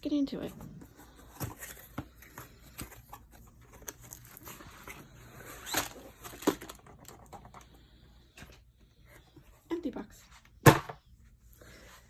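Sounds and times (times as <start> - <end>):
packaging rustling: 1.0 - 7.3
box knock: 10.6 - 11.0.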